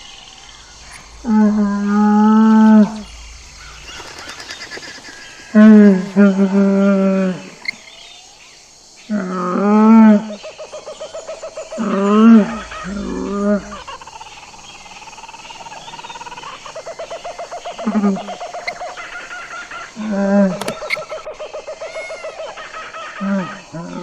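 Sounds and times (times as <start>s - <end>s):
camel bellowing: 0.3s - 3.8s, 11.8s - 14.0s
high-pitched camel call: 11.8s - 14.0s.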